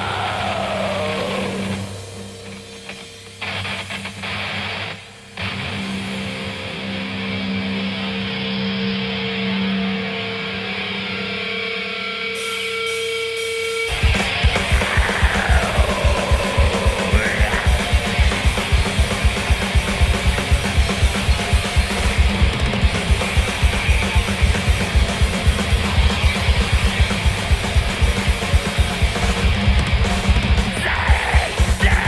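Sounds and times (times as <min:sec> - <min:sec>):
distorted electric guitars: 0:00.0 - 0:32.0
fast dense drumming: 0:13.9 - 0:32.0.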